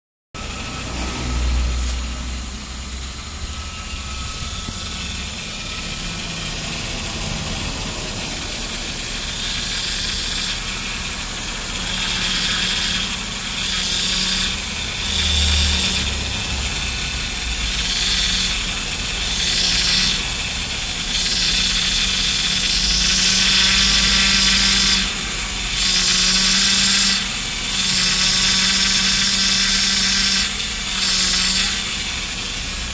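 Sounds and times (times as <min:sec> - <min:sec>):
car engine running: 0:00.4 - 0:25.8
power steering pump whining: 0:00.4 - 0:32.9.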